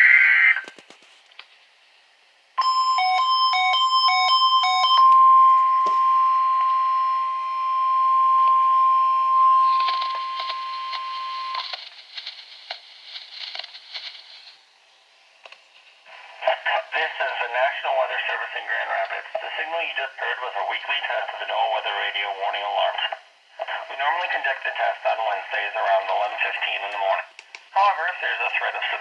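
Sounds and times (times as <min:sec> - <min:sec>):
radio static with crackles: 0:00.0 - 0:01.8, 0:08.2 - 0:14.7, 0:15.4 - 0:29.0
alternating two-tone beeping: 0:02.6 - 0:11.6
steady alarm tone: 0:02.6 - 0:11.6
buzzing data burst: 0:04.7 - 0:11.6.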